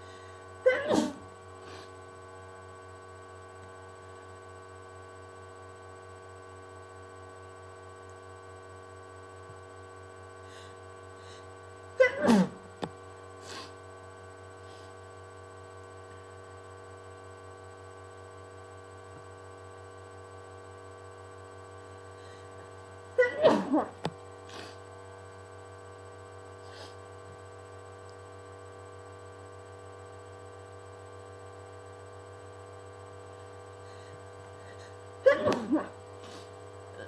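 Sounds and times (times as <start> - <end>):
steady hum with faint tones: 0.0 - 37.0
person sneezing: 0.7 - 1.9, 12.0 - 12.7, 13.4 - 13.8, 23.2 - 24.8, 26.7 - 27.0, 33.9 - 36.5.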